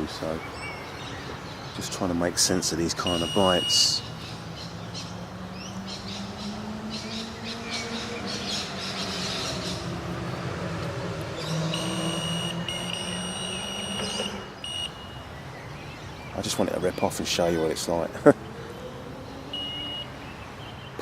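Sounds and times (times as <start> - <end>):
birds chirping: 0.0 - 21.0
electronic bite alarm tone: 3.1 - 4.0, 11.5 - 15.3, 19.5 - 20.1.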